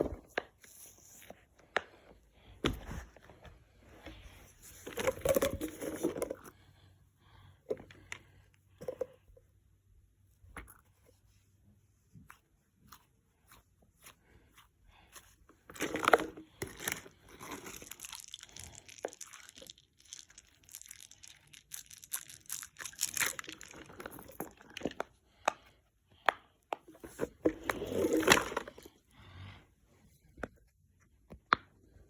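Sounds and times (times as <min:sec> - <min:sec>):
crinkly crackling noises: 0:15.8 - 0:25.1.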